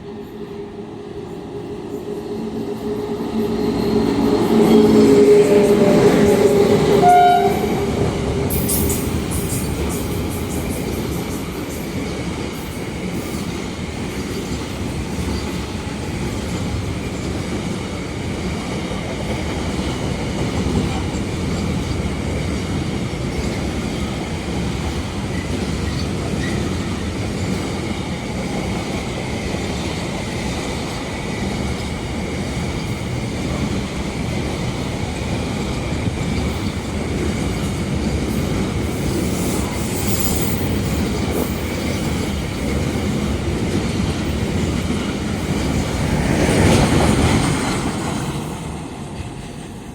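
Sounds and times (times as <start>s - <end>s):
train rumbling past: 0.0s - 49.9s
train horn: 3.4s - 8.7s.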